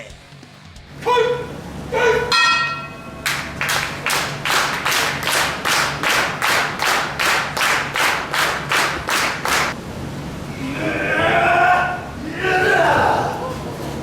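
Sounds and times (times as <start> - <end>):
crowd clapping in unison: 3.2 - 9.8.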